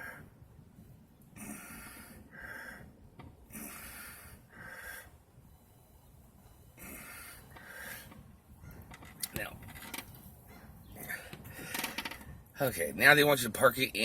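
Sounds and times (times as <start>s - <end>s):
person breathing through the nose: 3.5s - 8.1s.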